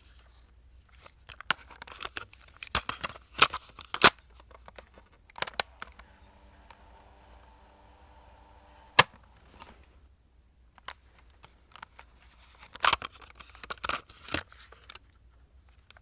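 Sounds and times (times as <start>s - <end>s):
cassette player clicks: 5.4s - 9.2s
tape motor humming: 5.4s - 9.2s
cassette plastic rattling: 5.4s - 9.6s.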